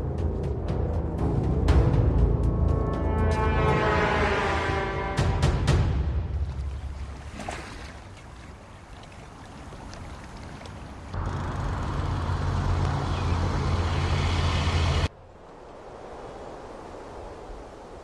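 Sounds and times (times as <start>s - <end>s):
vehicle engine rumbling: 11.0s - 15.1s.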